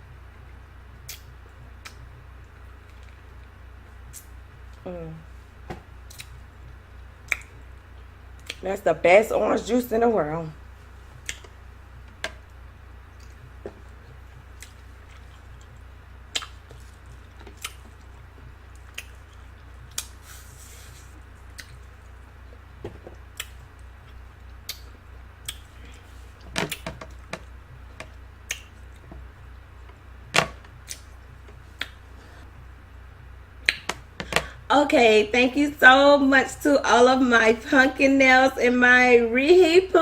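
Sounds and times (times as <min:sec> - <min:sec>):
steady low hum: 0:00.0 - 0:40.0
mouth clicks and smacks eating: 0:01.0 - 0:03.5, 0:06.0 - 0:08.6, 0:11.2 - 0:11.6, 0:13.1 - 0:20.2, 0:21.4 - 0:29.2, 0:30.7 - 0:32.0, 0:33.6 - 0:34.0.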